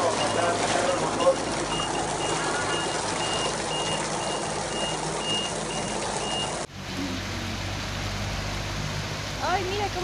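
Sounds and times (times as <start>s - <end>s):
vehicle reversing alarm beeping: 0.0s - 6.7s.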